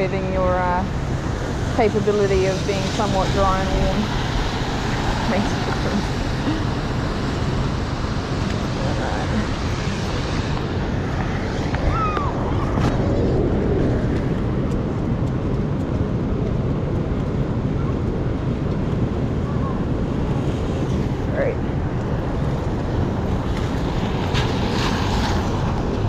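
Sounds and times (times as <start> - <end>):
heavy rain pouring: 0.0 - 15.0
city traffic: 0.0 - 26.0.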